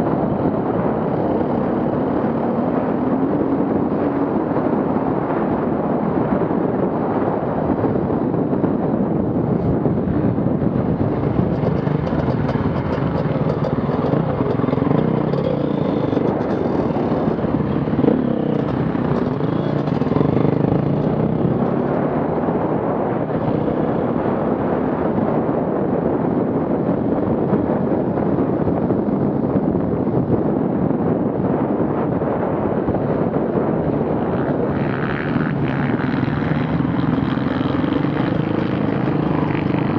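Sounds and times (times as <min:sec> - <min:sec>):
off-road vehicle engines revving: 0:09.4 - 0:25.5, 0:34.1 - 0:39.9.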